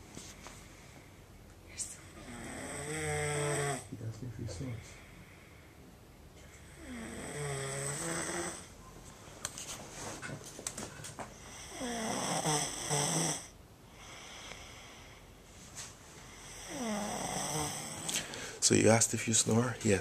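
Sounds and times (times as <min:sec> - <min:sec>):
man snoring loudly: 0:02.3 - 0:03.9, 0:06.7 - 0:08.6, 0:11.6 - 0:14.4, 0:16.4 - 0:18.1.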